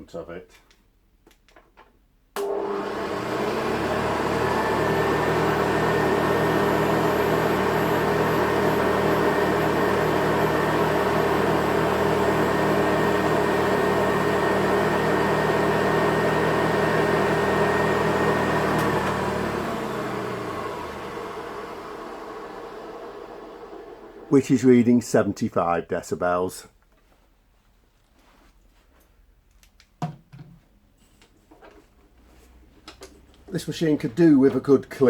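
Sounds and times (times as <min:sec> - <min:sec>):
vacuum cleaner motor running: 0:02.4 - 0:24.4.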